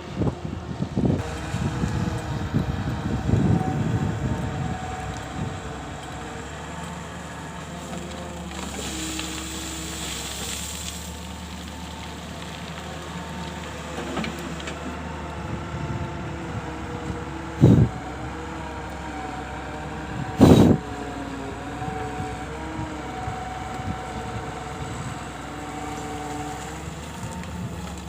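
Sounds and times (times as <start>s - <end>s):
wind buffeting microphone: 0.0s - 6.7s, 15.4s - 18.8s, 19.9s - 25.4s
excavator diesel engine running: 0.0s - 28.0s.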